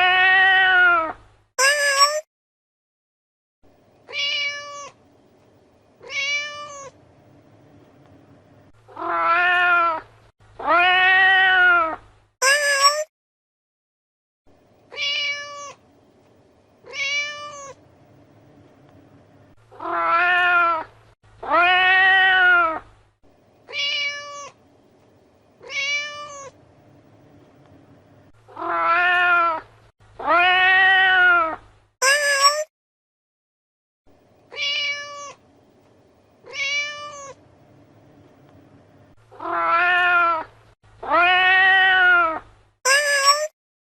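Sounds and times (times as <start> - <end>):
cat meowing: 0.0 - 2.2, 4.1 - 5.0, 6.0 - 7.0, 8.9 - 13.1, 14.9 - 15.8, 16.8 - 17.8, 19.7 - 22.8, 23.7 - 24.6, 25.6 - 26.6, 28.5 - 32.7, 34.5 - 35.4, 36.4 - 37.4, 39.3 - 43.5
faint low hum: 3.6 - 10.7, 14.5 - 30.3, 34.1 - 41.4.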